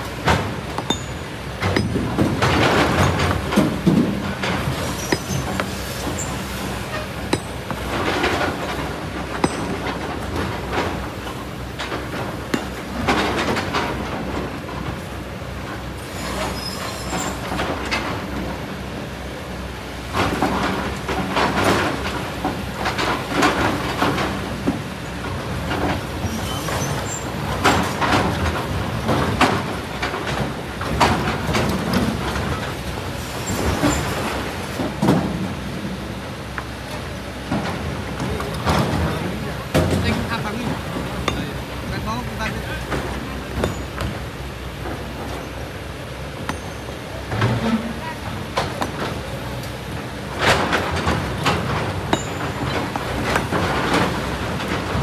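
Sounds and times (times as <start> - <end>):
excavator running: 0.0 - 55.0
stones clattering and grinding: 0.6 - 10.7.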